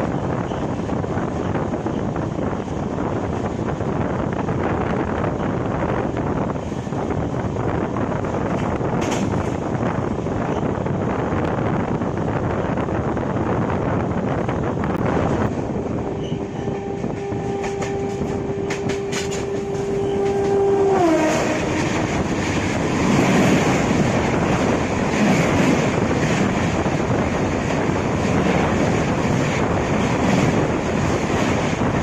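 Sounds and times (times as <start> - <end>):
train rattling along track: 0.0 - 32.0
train horn: 16.2 - 22.4.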